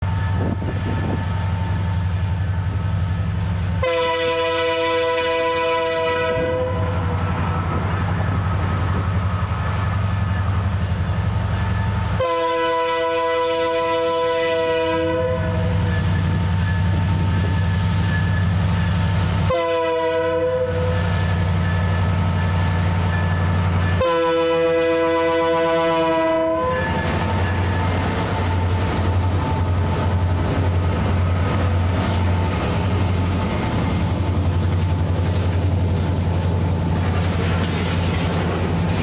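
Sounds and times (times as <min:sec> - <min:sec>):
locomotive air horn blasts: 0:03.8 - 0:07.2, 0:12.1 - 0:16.0, 0:19.4 - 0:21.3, 0:23.9 - 0:27.2.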